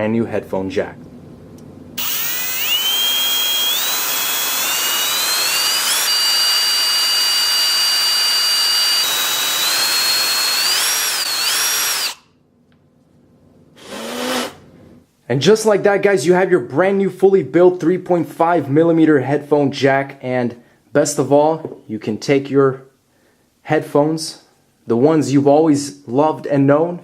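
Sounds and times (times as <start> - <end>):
electric drill whine: 2.0 - 12.2, 13.8 - 14.6.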